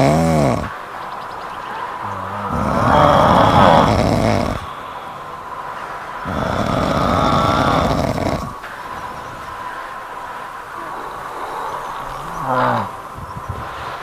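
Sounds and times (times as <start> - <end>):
cat snoring: 0.0 - 0.7, 2.0 - 5.0, 6.2 - 8.6, 10.8 - 13.0.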